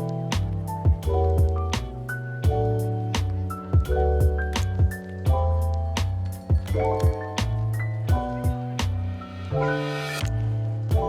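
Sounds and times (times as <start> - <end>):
drum hits on a steady beat: 0.0 - 5.4
background music with chords and bass: 0.0 - 11.0.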